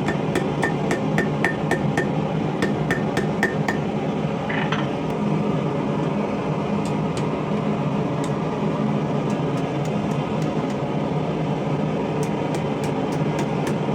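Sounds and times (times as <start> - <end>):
hammer striking metal on anvil: 0.0 - 3.9.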